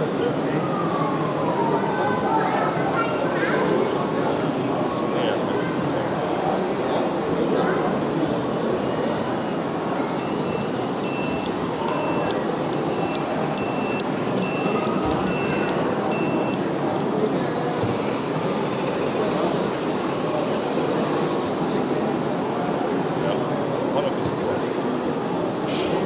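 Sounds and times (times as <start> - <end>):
crowd chatter: 0.0 - 26.0.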